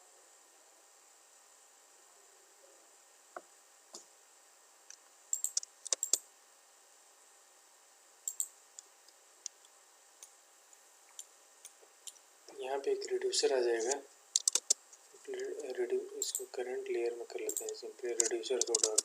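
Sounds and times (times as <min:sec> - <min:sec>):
faint hiss: 0:00.0 - 0:19.0
mouse clicks: 0:05.3 - 0:06.2, 0:08.3 - 0:08.5, 0:13.9 - 0:14.8, 0:17.5 - 0:19.0
keyboard keystrokes: 0:05.4 - 0:06.2, 0:14.4 - 0:14.8, 0:17.5 - 0:19.0.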